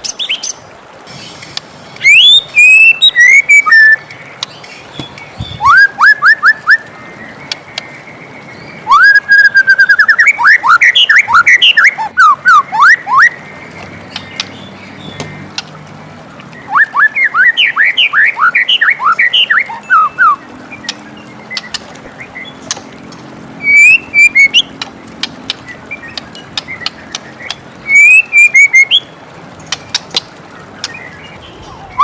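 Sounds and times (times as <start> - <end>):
bird whistling song: 0.0 - 0.6, 2.0 - 7.9, 8.5 - 13.5, 16.6 - 22.7, 23.6 - 24.8, 25.7 - 32.0
steady hiss: 0.0 - 2.6
sharp clicks: 24.8 - 27.6.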